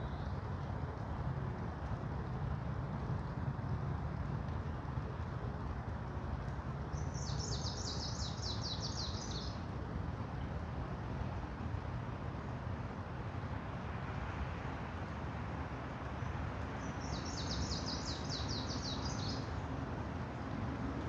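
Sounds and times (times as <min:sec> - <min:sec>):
songbird trill: 0:17.0 - 0:19.5.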